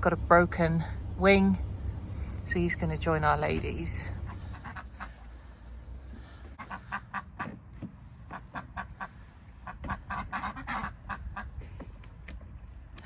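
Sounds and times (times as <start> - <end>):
ducks quacking: 4.1 - 5.5, 6.5 - 7.6, 8.3 - 11.6.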